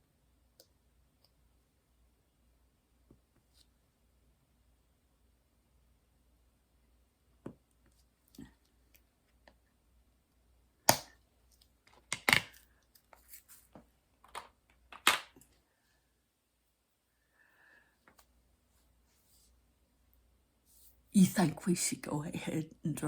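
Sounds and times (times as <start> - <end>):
small objects clicking on table: 11.9 - 13.1, 14.2 - 15.4.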